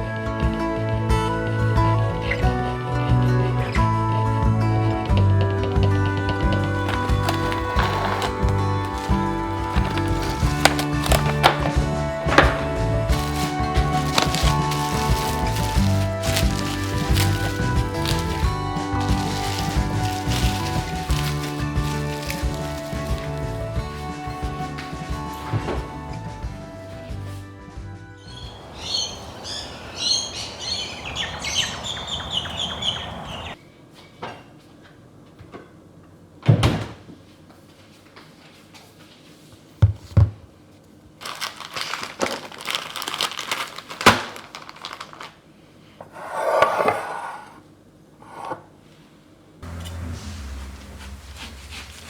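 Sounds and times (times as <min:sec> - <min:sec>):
kitchen knocks and thunks: 0:06.3 - 0:23.4, 0:25.4 - 0:26.0, 0:36.4 - 0:37.2, 0:39.8 - 0:40.5
high chirps: 0:28.2 - 0:33.6.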